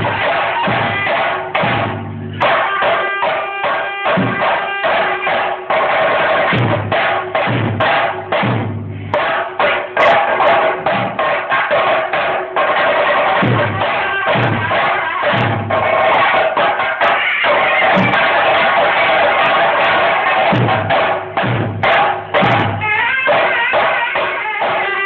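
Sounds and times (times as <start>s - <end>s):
heavy deep drum strokes: 0.0s - 3.4s, 4.0s - 17.2s, 17.8s - 23.0s
rapid drum strokes: 0.0s - 25.0s.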